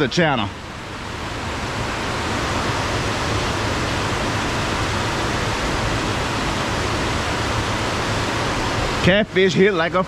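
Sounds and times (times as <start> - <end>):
fast-flowing water rushing: 0.0 - 10.0.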